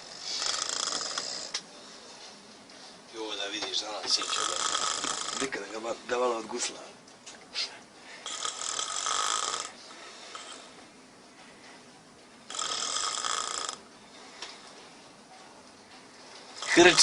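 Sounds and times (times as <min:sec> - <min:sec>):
person snoring loudly: 0:00.0 - 0:01.6, 0:04.2 - 0:05.6, 0:08.2 - 0:10.6, 0:12.5 - 0:13.8.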